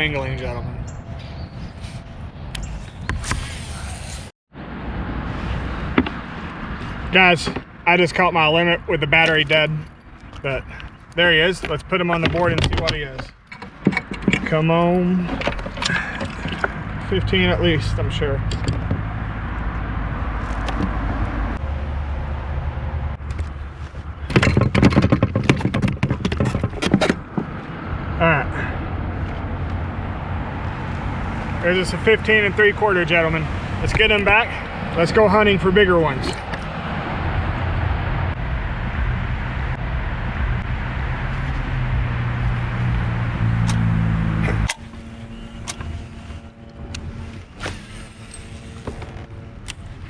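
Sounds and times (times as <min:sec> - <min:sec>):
rushing noise: 0:01.0 - 0:09.0, 0:29.9 - 0:50.0
low rumble: 0:36.4 - 0:49.8
motor running with low hum: 0:43.4 - 0:50.0.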